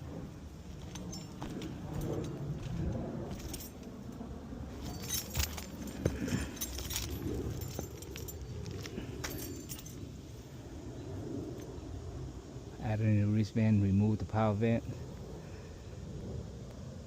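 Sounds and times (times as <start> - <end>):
low rumble: 0.0 - 13.4
light metallic jingling: 0.7 - 10.2.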